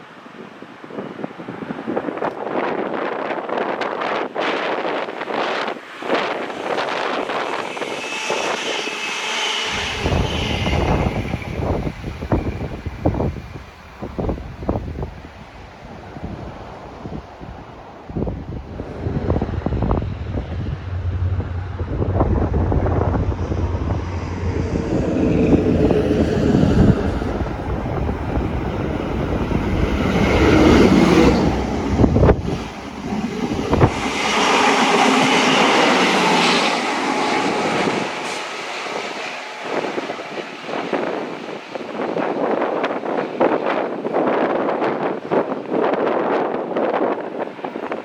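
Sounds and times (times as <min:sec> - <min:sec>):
wind noise on microphone: 0:00.2 - 0:48.0
train passing: 0:01.2 - 0:48.0
train wheels clacking: 0:06.0 - 0:13.8.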